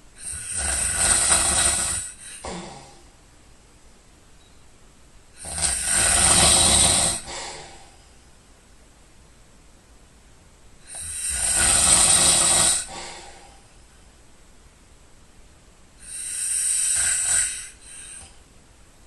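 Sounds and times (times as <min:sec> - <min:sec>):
person snoring loudly: 0:00.2 - 0:03.0, 0:05.4 - 0:07.8, 0:10.9 - 0:13.5, 0:16.0 - 0:18.3.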